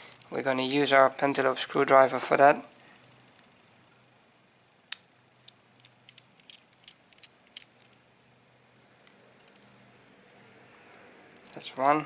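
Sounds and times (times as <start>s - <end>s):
screwdriver metallic clicks: 4.9s - 8.0s.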